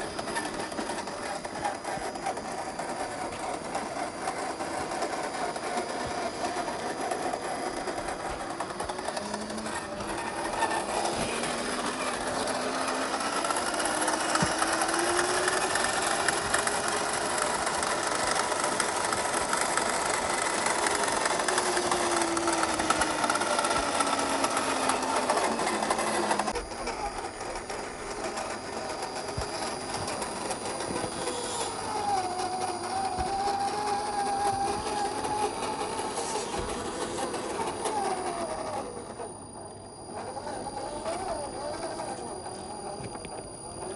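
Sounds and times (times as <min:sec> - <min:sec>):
electric motor and gears whining: 0:00.0 - 0:43.9.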